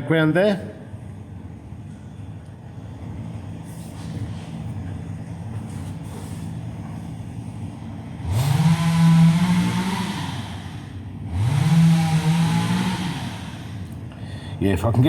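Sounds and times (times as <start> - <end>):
chainsaw idling and revving: 8.2 - 13.9.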